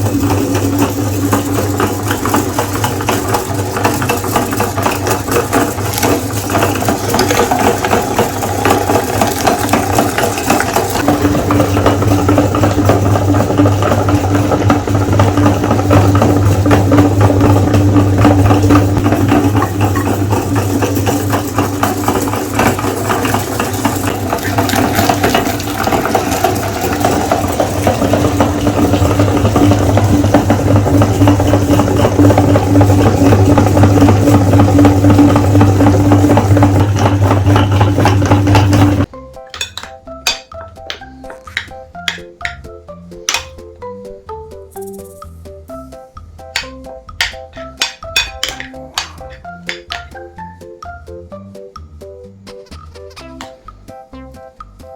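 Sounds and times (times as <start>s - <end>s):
electric meat grinder running: 0.0s - 39.1s
grinder rattle: 0.0s - 42.7s, 43.3s - 43.6s, 46.6s - 50.2s.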